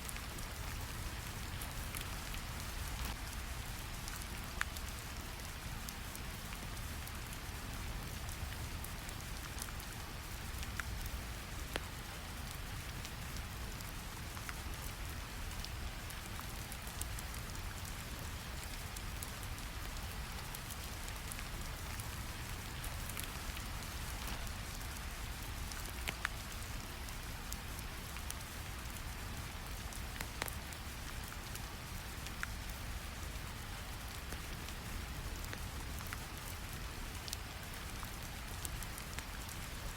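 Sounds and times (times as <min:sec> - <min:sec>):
rain: 0:00.0 - 0:39.9
faint crackles: 0:13.7 - 0:39.9.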